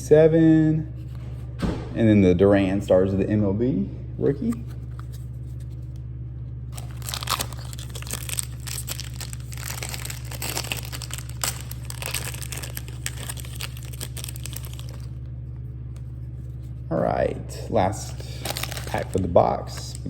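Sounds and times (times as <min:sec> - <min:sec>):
foil wrapper crinkling and tearing: 0:06.7 - 0:15.2, 0:18.0 - 0:20.0.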